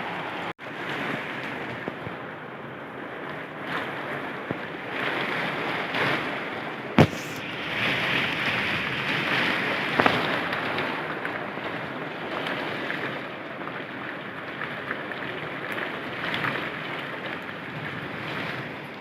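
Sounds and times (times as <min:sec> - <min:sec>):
sharp crack: 0:07.0 - 0:07.5.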